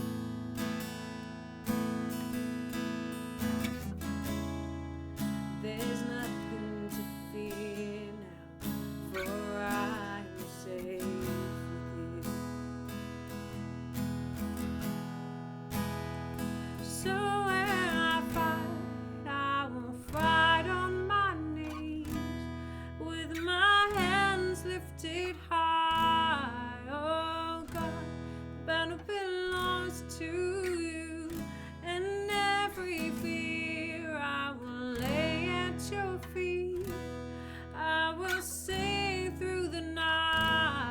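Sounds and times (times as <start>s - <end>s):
acoustic guitar strumming: 0.0s - 40.9s
person singing: 5.6s - 8.4s, 9.2s - 12.4s, 17.0s - 22.3s, 23.0s - 28.1s.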